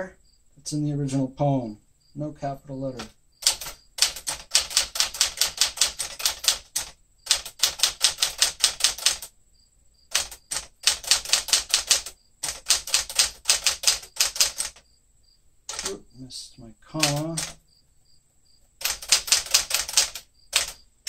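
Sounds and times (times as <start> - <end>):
typewriter key strikes: 15.7 - 16.0, 17.0 - 17.6, 18.8 - 20.8.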